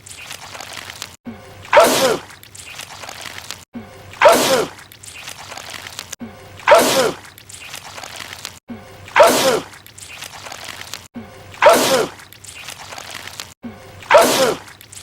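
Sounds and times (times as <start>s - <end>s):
man sneezing: 11.6s - 12.2s.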